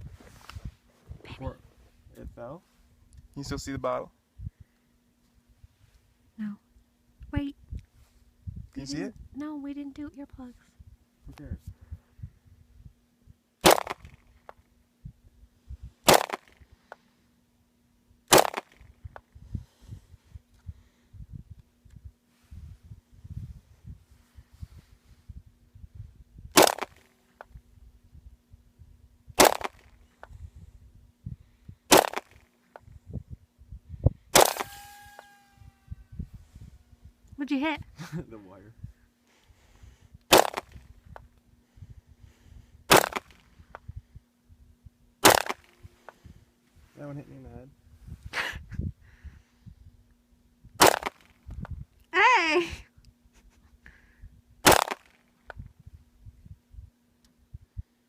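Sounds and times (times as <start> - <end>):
pistol shots: 34.4 - 34.9.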